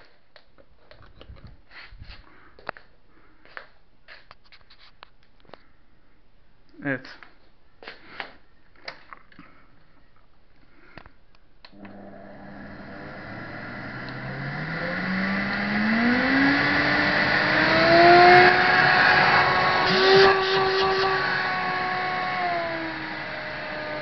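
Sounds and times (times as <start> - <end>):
vacuum cleaner motor whining: 11.7 - 24.0.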